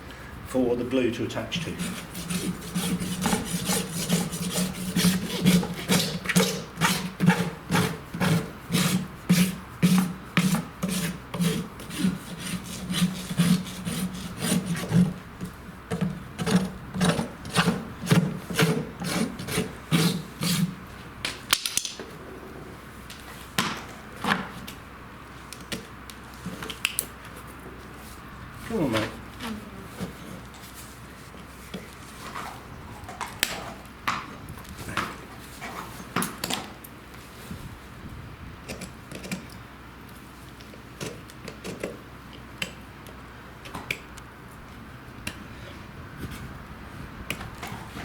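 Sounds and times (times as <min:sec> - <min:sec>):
rasp scraping a hoof: 0:01.6 - 0:21.0.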